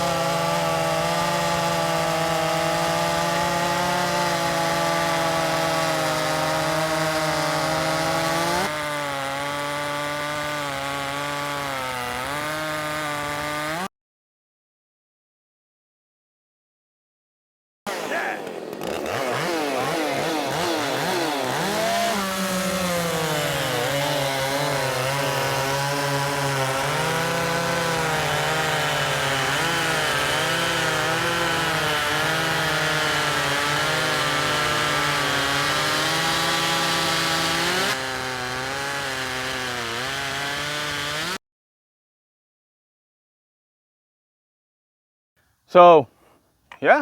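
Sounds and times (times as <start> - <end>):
chainsaw cutting wood: 0.0 - 13.9, 17.9 - 41.4.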